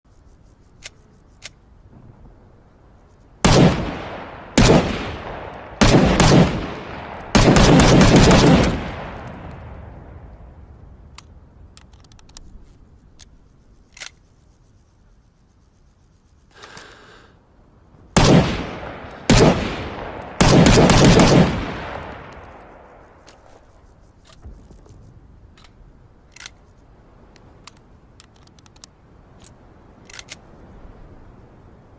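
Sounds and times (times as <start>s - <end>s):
faint clicks: 0.1s - 1.7s, 11.0s - 17.0s, 22.0s - 30.8s
rifle shots: 3.4s - 9.7s, 18.2s - 23.2s.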